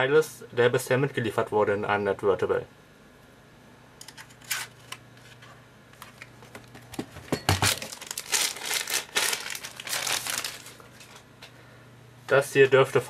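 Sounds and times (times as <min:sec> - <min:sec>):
plastic packaging crinkling: 0:07.5 - 0:11.4.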